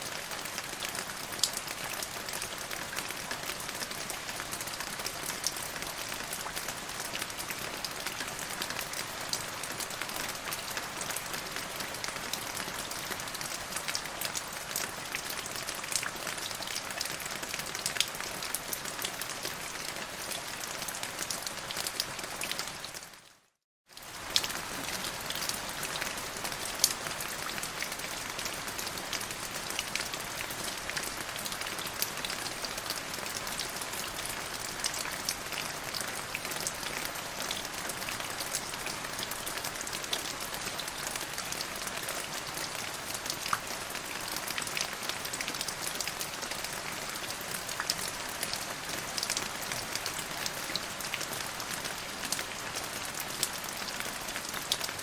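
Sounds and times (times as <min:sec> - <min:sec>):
steady rain: 0:00.0 - 0:55.0.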